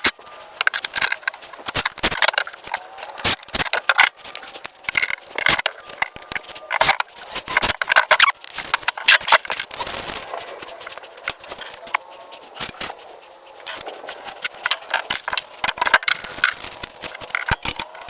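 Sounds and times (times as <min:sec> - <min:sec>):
clicks taps and clatter of parts: 0:00.0 - 0:10.1.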